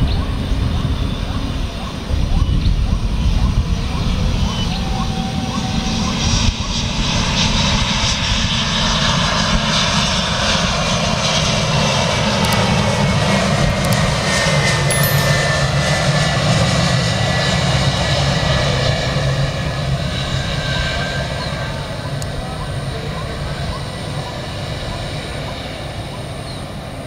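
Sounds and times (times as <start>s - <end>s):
airliner engines whining and rumbling: 0.0s - 27.0s.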